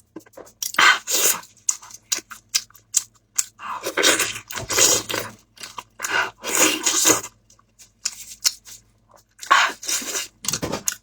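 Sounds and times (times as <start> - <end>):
person chewing food: 0.0 - 11.0.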